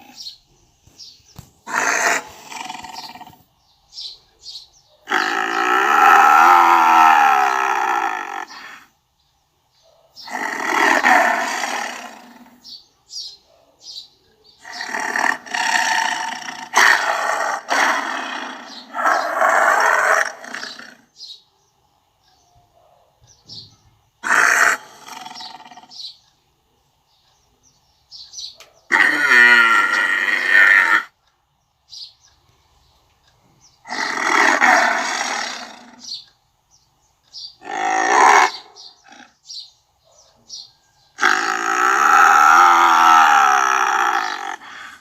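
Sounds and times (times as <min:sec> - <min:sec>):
tiger roaring: 0:01.6 - 0:03.4, 0:05.0 - 0:09.0, 0:10.2 - 0:12.7, 0:14.6 - 0:21.2, 0:24.2 - 0:26.0, 0:28.9 - 0:31.2, 0:33.8 - 0:36.1, 0:37.6 - 0:39.5, 0:41.1 - 0:45.0.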